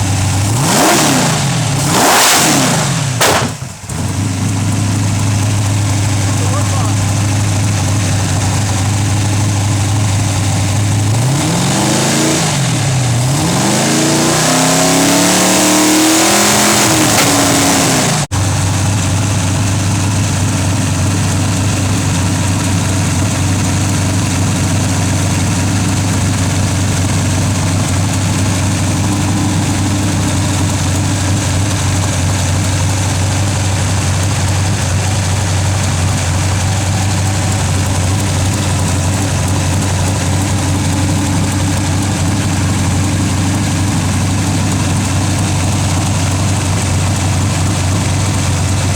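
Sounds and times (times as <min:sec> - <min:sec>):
engine idling and revving: 0:00.0 - 0:48.9.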